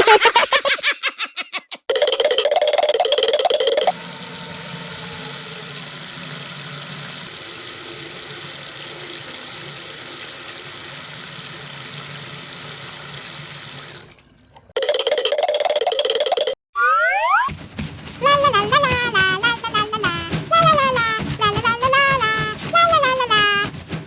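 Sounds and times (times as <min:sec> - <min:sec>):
water running: 0:03.8 - 0:14.7, 0:17.5 - 0:24.0.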